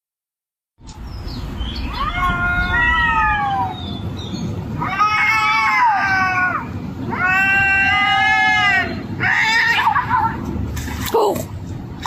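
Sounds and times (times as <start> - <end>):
cat yowling: 1.8 - 3.8, 4.8 - 10.2.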